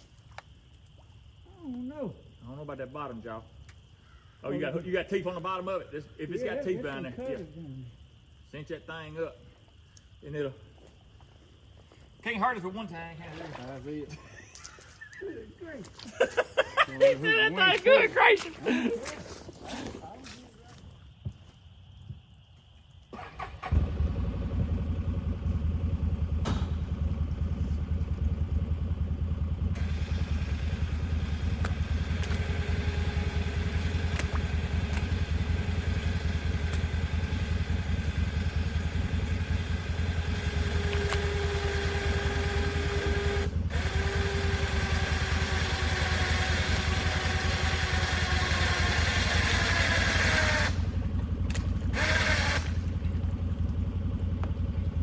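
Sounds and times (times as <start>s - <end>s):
vehicle engine running: 23.2s - 55.0s.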